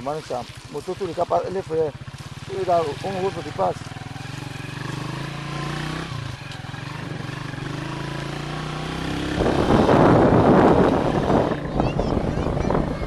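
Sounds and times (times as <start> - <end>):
motorcycle engine running: 0.0 - 13.0
wind buffeting microphone: 9.0 - 13.0.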